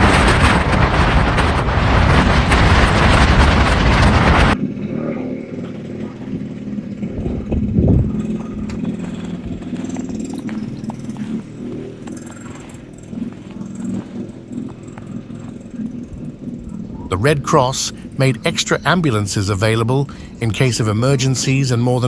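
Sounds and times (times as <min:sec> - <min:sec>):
loud rush of noise: 0:00.0 - 0:22.0
vehicle engine running: 0:00.0 - 0:22.0
small scattered clicks: 0:07.5 - 0:16.8.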